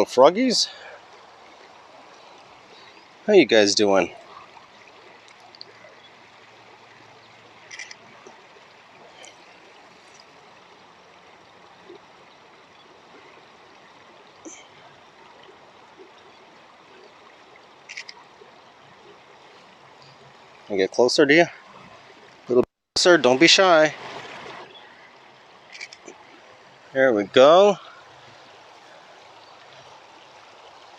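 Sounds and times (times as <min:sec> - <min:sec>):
creek water trickling: 0:00.0 - 0:30.9.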